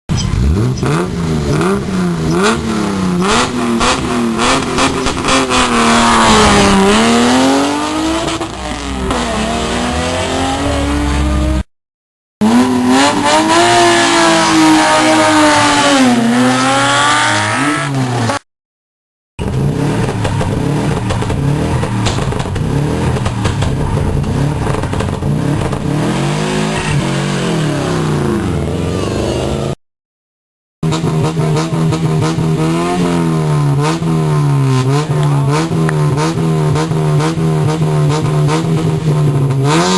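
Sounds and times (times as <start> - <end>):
rally car engines revving: 0.1 - 11.7, 12.4 - 18.4, 19.4 - 29.8, 30.8 - 39.9
engine crackles: 19.4 - 27.3.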